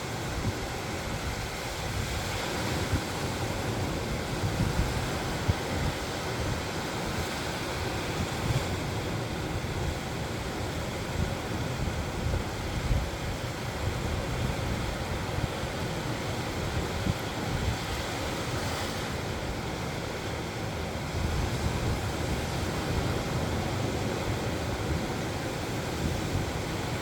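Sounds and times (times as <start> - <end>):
ocean waves roaring: 0.0 - 27.0
wind rumbling on microphone: 0.1 - 27.0.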